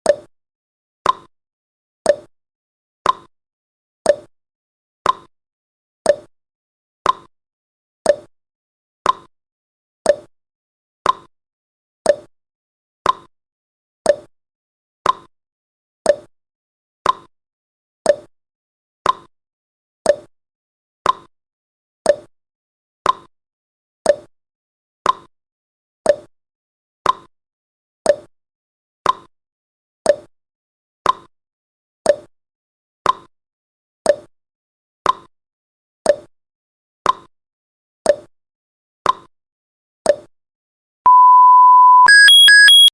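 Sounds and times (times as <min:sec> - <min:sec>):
timer ticking: 0:41.1 - 0:42.9.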